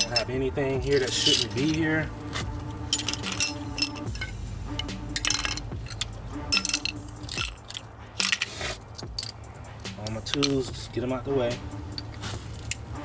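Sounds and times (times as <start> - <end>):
metal tools clinking: 0.0 - 9.4, 10.0 - 10.8.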